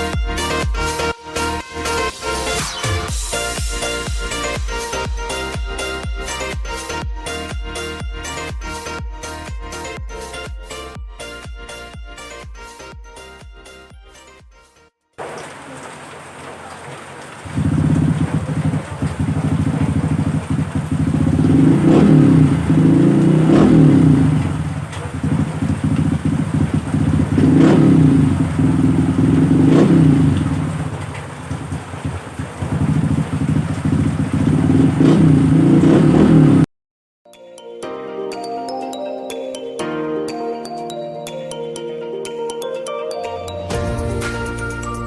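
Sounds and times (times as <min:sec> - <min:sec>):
motorcycle engine revving: 0:15.2 - 0:36.7.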